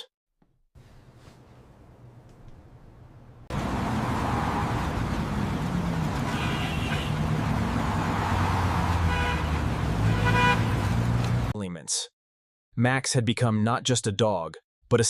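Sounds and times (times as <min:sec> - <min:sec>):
traffic engines running: 0:03.3 - 0:11.6
car horns honking: 0:06.0 - 0:07.6, 0:08.2 - 0:11.2.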